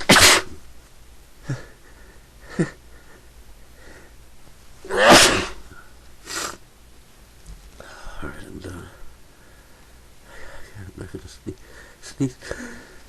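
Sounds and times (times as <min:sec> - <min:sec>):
person sneezing: 0:00.0 - 0:00.6, 0:04.9 - 0:05.7.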